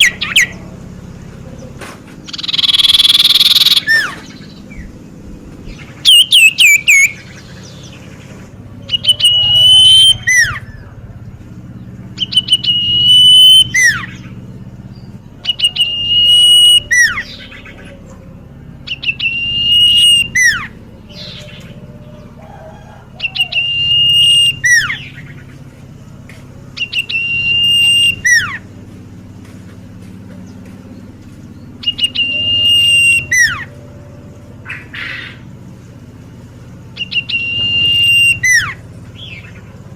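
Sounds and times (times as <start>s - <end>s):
bird whistling song: 0.0s - 0.7s, 1.6s - 8.2s, 8.8s - 10.9s, 11.8s - 18.2s, 18.8s - 22.3s, 23.1s - 25.6s, 26.8s - 28.8s, 30.4s - 35.5s, 36.8s - 39.7s.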